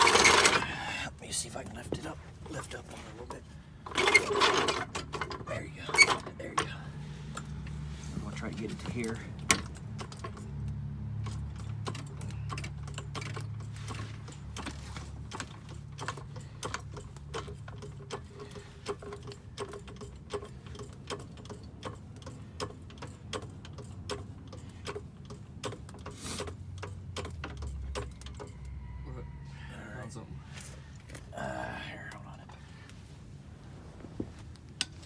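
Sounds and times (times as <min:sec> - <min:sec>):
jack pumping clicks: 0:00.0 - 0:00.8, 0:03.2 - 0:28.8.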